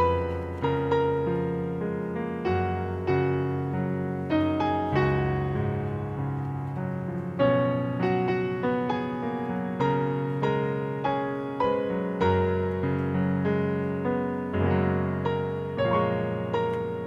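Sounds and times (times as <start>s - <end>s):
solo piano melody: 0.0s - 17.0s.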